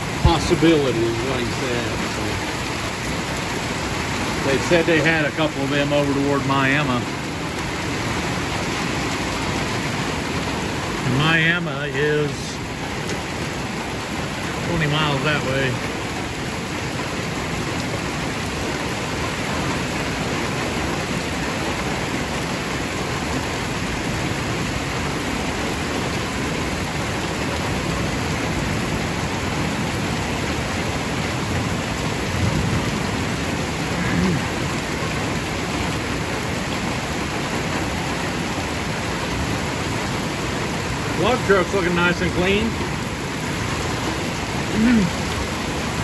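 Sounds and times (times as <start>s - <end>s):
heavy rain pouring: 0.0s - 46.0s.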